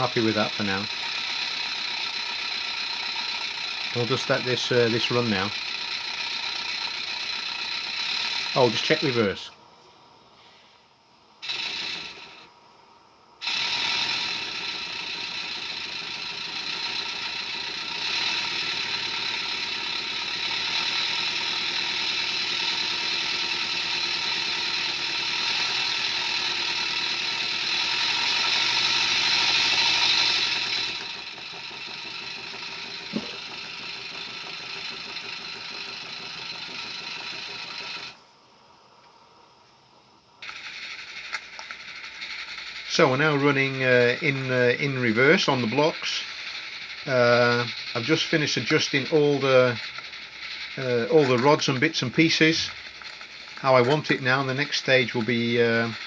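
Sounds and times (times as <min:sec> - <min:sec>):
locomotive mechanism clattering: 0:00.0 - 0:09.4, 0:26.9 - 0:38.2, 0:40.4 - 0:56.0
steam hissing: 0:00.0 - 0:09.5, 0:13.4 - 0:38.2, 0:40.4 - 0:56.0.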